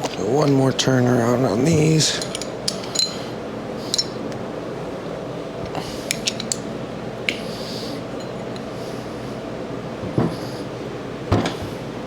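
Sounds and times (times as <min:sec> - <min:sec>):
steady low hum: 0:00.0 - 0:12.0
wrench clicking on bolts: 0:02.0 - 0:03.2, 0:03.9 - 0:04.2, 0:06.0 - 0:06.7.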